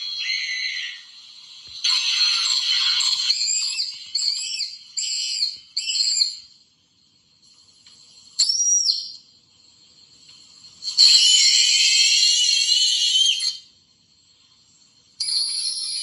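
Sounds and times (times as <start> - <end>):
cartoon screams and shrieks: 0.2 - 1.1.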